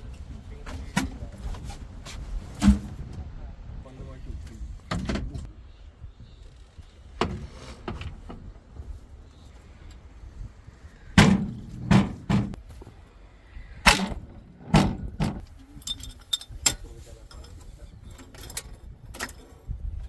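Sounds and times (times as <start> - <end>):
low engine rumble: 0.0 - 19.1
machinery thuds and clanks: 11.2 - 12.6, 13.9 - 15.4.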